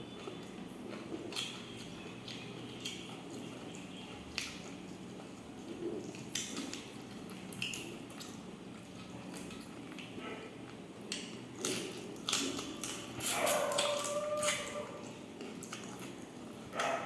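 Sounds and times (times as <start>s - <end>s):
chewing and mouth sounds: 0.0s - 17.0s.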